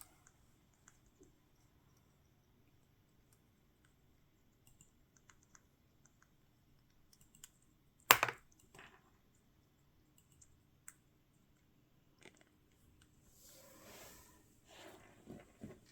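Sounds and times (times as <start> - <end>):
sharp nut crack: 8.1 - 8.4.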